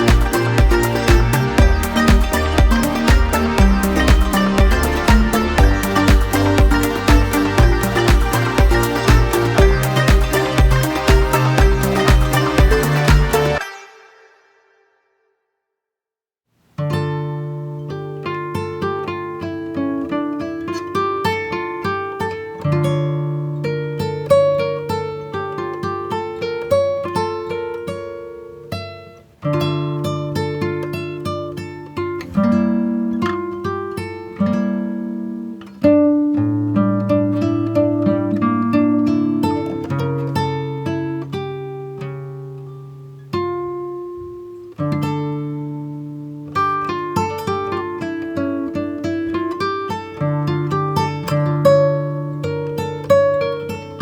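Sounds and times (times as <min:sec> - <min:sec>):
acoustic guitar picking melody: 0:00.0 - 0:14.5, 0:16.8 - 0:54.0
plucked string music: 0:00.0 - 0:14.8, 0:16.8 - 0:54.0.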